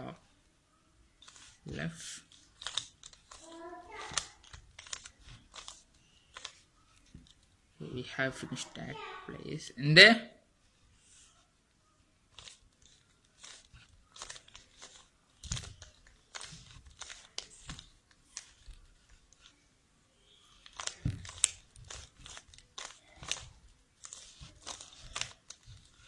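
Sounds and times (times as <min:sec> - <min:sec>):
puzzle cube clicking and rasping: 0:01.2 - 0:01.6, 0:02.2 - 0:07.5, 0:12.3 - 0:19.6, 0:20.5 - 0:26.0.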